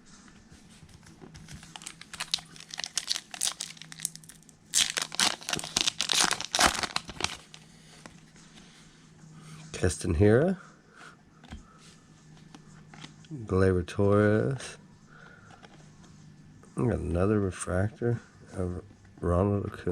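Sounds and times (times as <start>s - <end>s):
foil wrapper crinkling and tearing: 1.4s - 7.6s.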